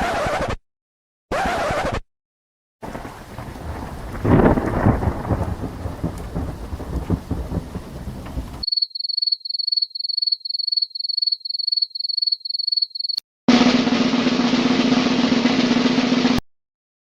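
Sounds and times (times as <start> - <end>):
steady rain: 2.8 - 8.6
thunder rumbling: 2.8 - 8.6.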